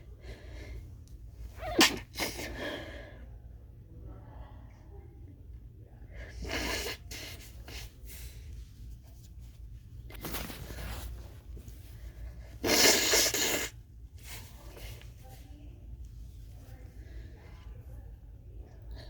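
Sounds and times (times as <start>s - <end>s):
stifled sneezes: 1.5s - 2.6s, 12.6s - 13.8s.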